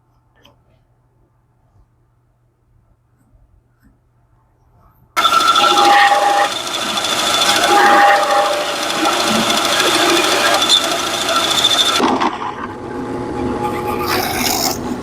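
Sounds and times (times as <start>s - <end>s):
power tool whining: 5.2s - 12.0s
low hum: 5.2s - 15.0s.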